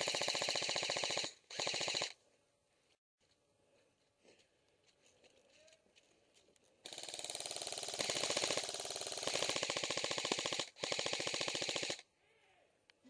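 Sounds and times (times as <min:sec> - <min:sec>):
airsoft rifle automatic bursts: 0:00.0 - 0:02.2, 0:06.8 - 0:12.0.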